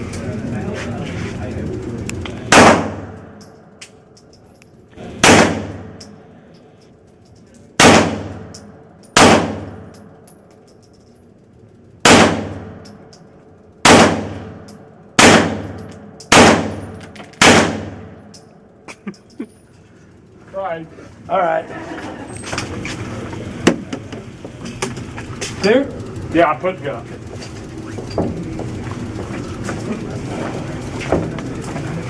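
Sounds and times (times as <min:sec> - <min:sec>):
handgun shots: 0:05.2 - 0:06.1, 0:07.8 - 0:08.6, 0:09.2 - 0:09.8, 0:15.2 - 0:17.9.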